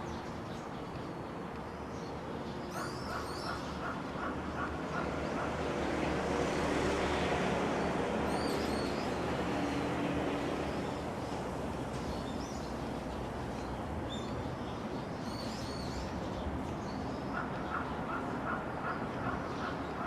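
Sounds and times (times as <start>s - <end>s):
birds chirping: 2.5s - 5.6s.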